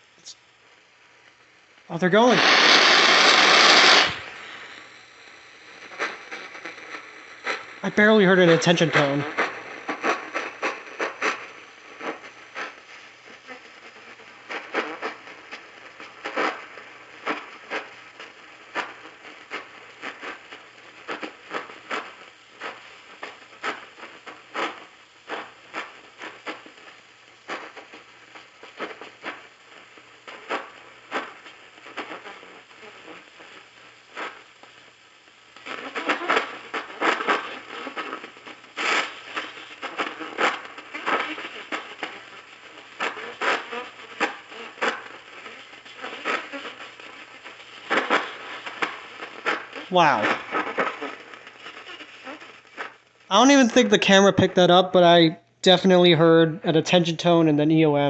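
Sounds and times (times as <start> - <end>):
radio hiss and static crackle: 0.0 - 58.0
radio station audio: 1.9 - 4.9, 7.6 - 9.6, 49.8 - 50.9, 53.3 - 58.0.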